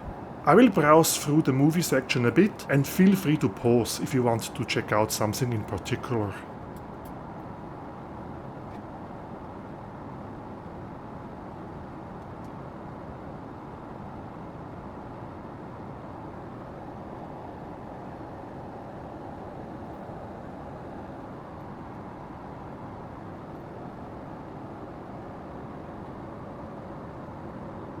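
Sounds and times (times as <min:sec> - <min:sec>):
airliner cabin noise: 0:00.0 - 0:06.5.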